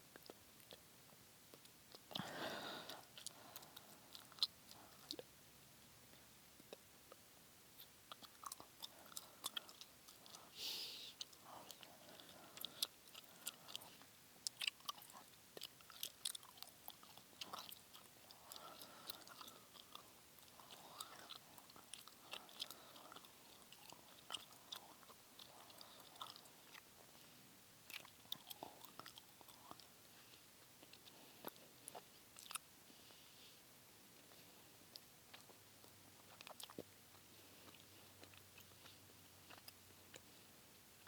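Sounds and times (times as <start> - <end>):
gum chewing mouth clicks: 0.1 - 0.9, 1.5 - 5.3, 7.8 - 10.5, 11.2 - 27.3, 27.9 - 32.7, 34.2 - 40.3.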